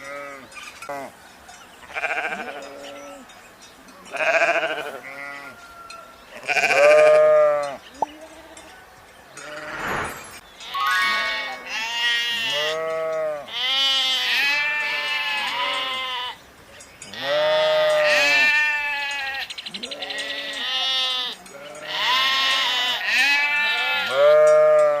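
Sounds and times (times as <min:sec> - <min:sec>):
sheep bleating: 0:04.1 - 0:05.5, 0:06.4 - 0:08.6, 0:10.7 - 0:16.4, 0:17.2 - 0:25.0.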